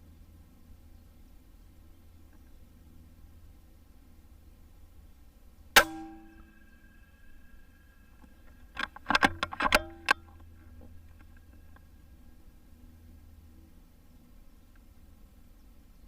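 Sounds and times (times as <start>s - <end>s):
air rifle shot: 5.8s - 6.7s.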